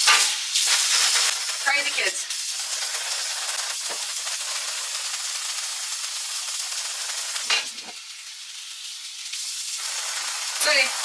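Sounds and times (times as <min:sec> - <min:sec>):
water running from tap: 0:00.0 - 0:11.0.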